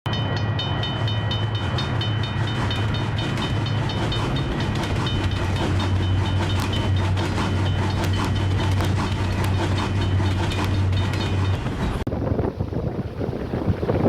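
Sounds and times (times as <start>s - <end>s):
train wheels clicking over rail joints: 0.1s - 12.0s
low train rumble: 0.1s - 14.0s.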